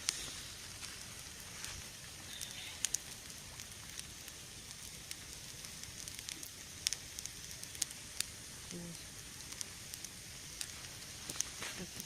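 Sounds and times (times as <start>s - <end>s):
campfire hissing: 0.0s - 12.0s
fire crackles and pops: 0.0s - 12.0s.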